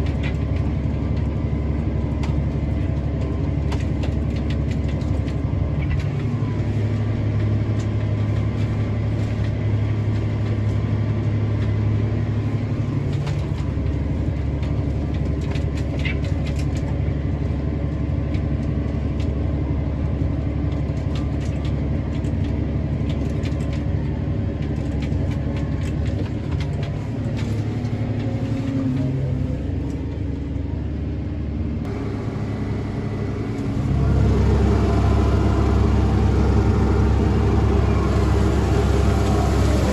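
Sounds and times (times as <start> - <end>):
tractor engine running: 0.0 - 11.7, 31.8 - 39.9.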